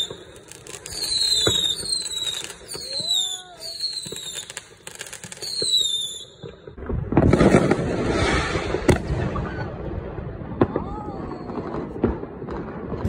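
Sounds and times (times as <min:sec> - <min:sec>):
falling firework whistle: 0:00.0 - 0:04.6, 0:05.2 - 0:06.6
firework crackling barrage: 0:00.0 - 0:13.0.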